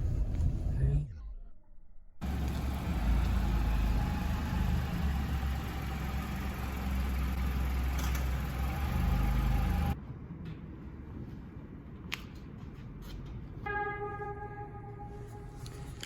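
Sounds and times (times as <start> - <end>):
car engine hum: 2.2 - 10.0
road noise: 2.2 - 10.0.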